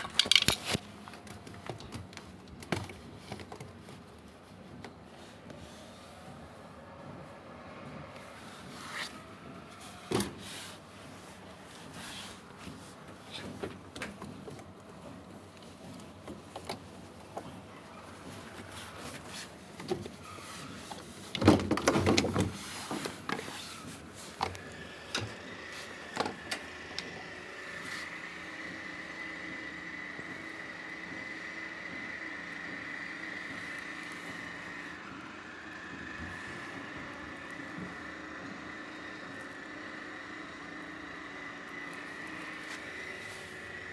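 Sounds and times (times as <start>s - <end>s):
handling knocks and clatter: 0.0s - 2.0s.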